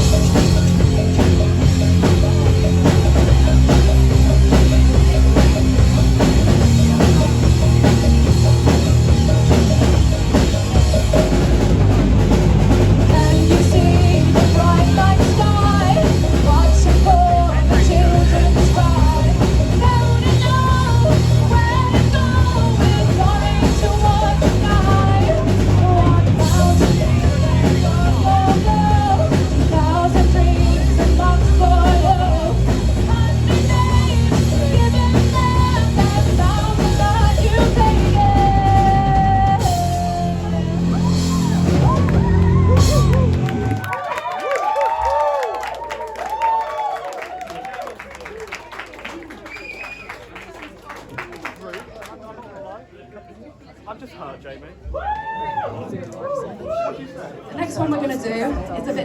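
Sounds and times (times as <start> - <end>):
drum kit: 0.0 - 44.1
bass: 0.0 - 52.0.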